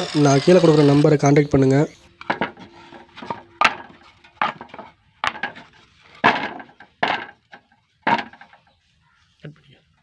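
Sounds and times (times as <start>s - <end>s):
sharp knocks on wood: 3.2s - 5.6s, 6.2s - 8.5s.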